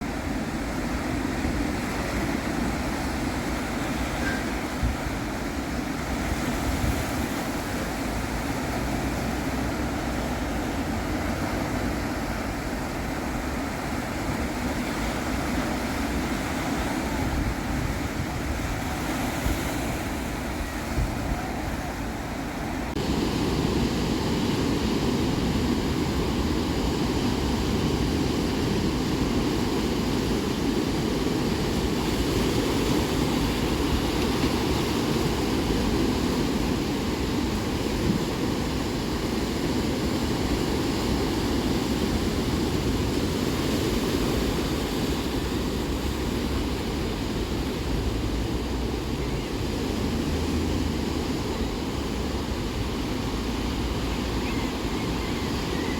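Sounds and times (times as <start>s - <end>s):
ocean waves breaking: 0.0s - 55.9s.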